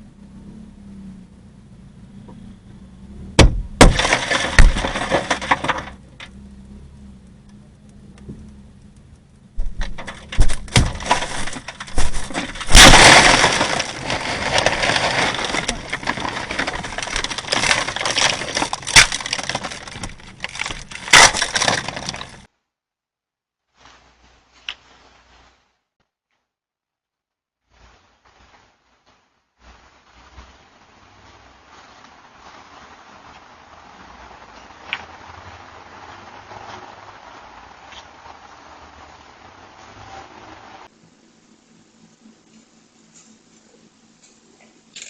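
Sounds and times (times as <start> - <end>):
crashing and smashing: 3.4 - 6.4, 9.6 - 22.5
rattling clatter: 3.4 - 6.4, 9.6 - 22.5.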